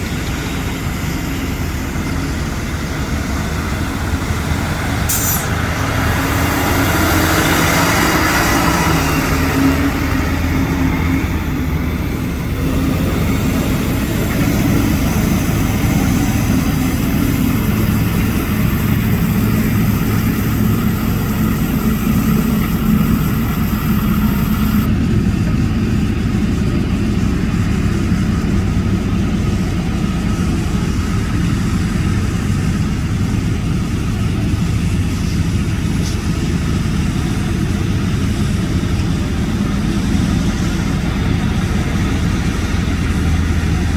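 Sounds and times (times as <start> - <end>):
diesel engine idling: 0.0 - 43.9
high hiss: 3.9 - 24.9.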